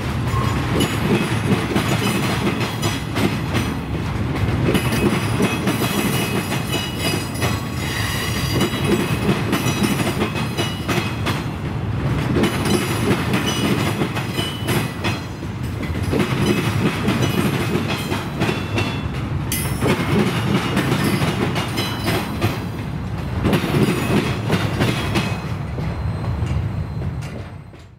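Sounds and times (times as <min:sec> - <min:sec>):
train wheels rumbling: 0:00.0 - 0:27.9.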